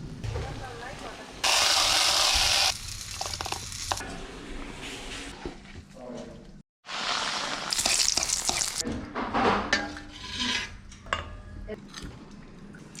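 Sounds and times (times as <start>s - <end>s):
food sizzling in a pan: 0.8s - 4.0s, 6.8s - 8.8s.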